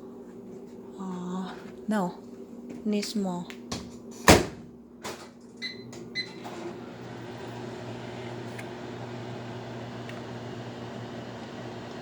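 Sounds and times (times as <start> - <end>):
microwave oven humming: 4.1 - 12.0
microwave keypad beeps: 5.6 - 6.4.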